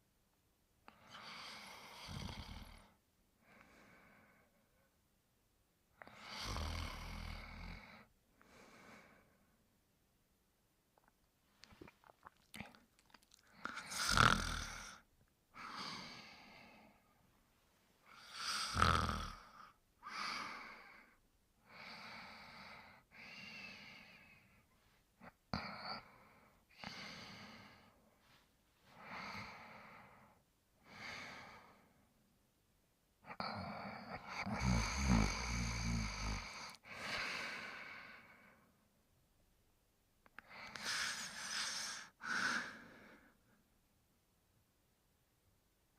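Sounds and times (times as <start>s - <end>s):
person snoring: 1.1s - 2.9s, 6.0s - 8.0s, 11.9s - 15.0s, 18.1s - 20.9s, 33.3s - 38.2s, 40.6s - 43.0s.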